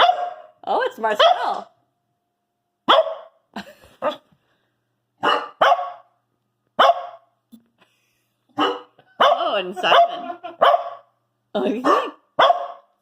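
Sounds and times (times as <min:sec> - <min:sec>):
dog barking: 0:00.0 - 0:00.6, 0:01.2 - 0:01.7, 0:02.9 - 0:03.4, 0:04.0 - 0:04.2, 0:05.2 - 0:06.1, 0:06.8 - 0:07.3, 0:08.6 - 0:11.1, 0:11.8 - 0:13.0.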